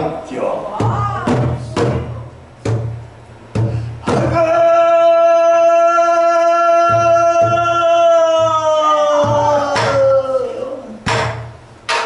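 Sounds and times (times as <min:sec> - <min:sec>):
barrel drum strokes: 0:00.8 - 0:04.4, 0:11.0 - 0:12.0.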